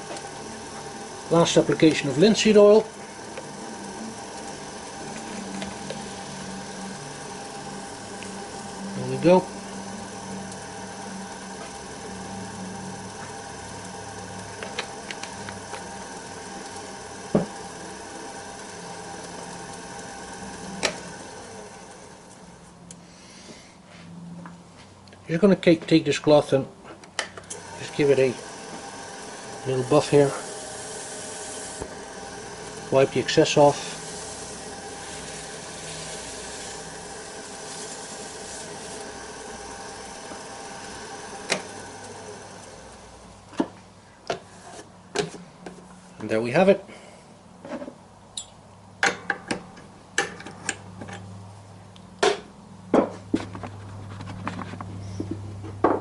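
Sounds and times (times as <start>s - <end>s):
wood lathe humming: 0.0s - 22.8s, 27.4s - 43.8s.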